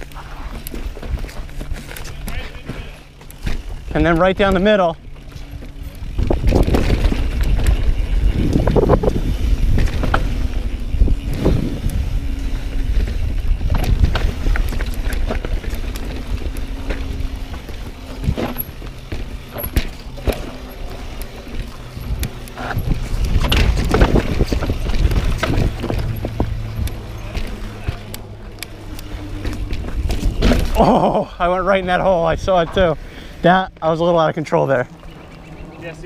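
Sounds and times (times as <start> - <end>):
bike rattling and knocking on rocks: 0.0 - 32.9
bike tyres rumbling: 0.0 - 36.0
wind on microphone: 5.9 - 17.2, 21.7 - 27.2.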